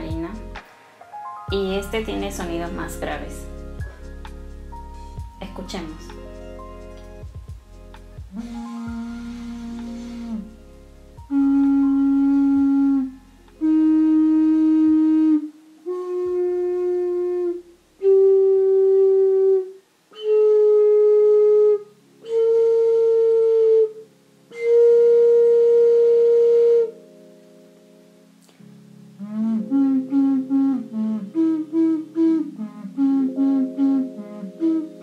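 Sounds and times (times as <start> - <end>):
low ocarina playing a scale: 6.8 - 27.1, 29.2 - 35.0.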